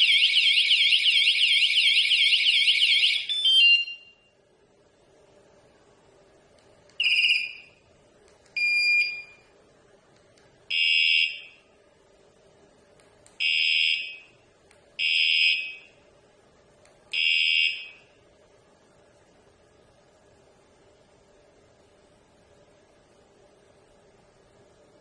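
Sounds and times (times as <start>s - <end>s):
bike alarm electronic chirps: 0.0s - 4.3s, 7.0s - 7.8s, 8.6s - 9.4s, 10.7s - 11.6s, 15.0s - 15.9s.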